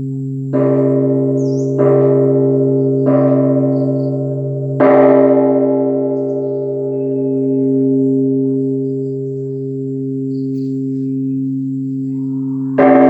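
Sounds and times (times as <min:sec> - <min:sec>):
temple bell ringing: 0:00.0 - 0:13.0
steady low tone: 0:05.5 - 0:13.0.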